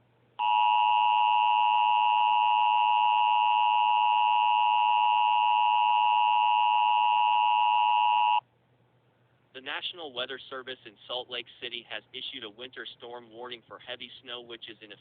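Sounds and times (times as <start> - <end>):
two-tone alarm: 0.4 - 8.4.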